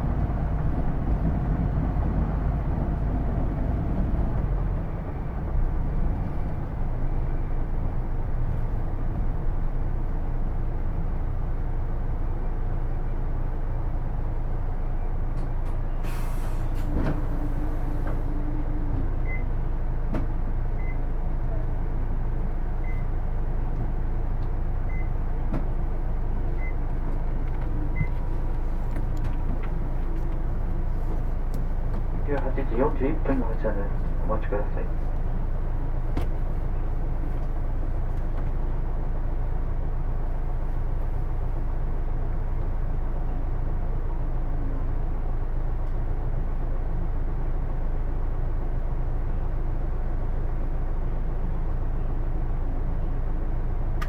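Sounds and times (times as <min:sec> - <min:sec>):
bus engine idling: 0:00.0 - 0:54.0.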